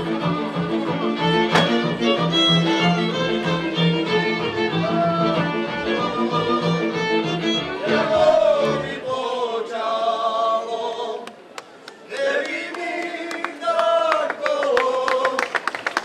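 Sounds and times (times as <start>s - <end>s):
fiddle band with bass: 0.0s - 9.0s
group singing folk song in chorus: 7.6s - 11.3s, 12.1s - 15.4s.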